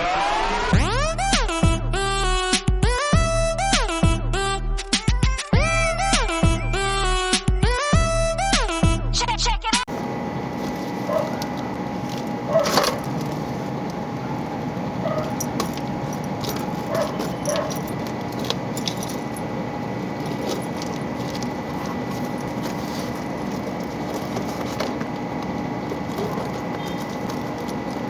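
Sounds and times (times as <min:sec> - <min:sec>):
faint steady whine: 0:09.9 - 0:28.0
steady background noise: 0:09.9 - 0:28.0
small metallic clicks and jingles: 0:11.1 - 0:28.0.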